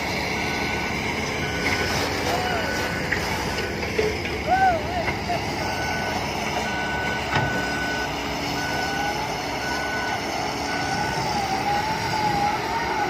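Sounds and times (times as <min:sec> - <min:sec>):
diesel engine running: 0:00.0 - 0:13.0
warning alarm beeping: 0:00.3 - 0:03.8, 0:05.1 - 0:13.0.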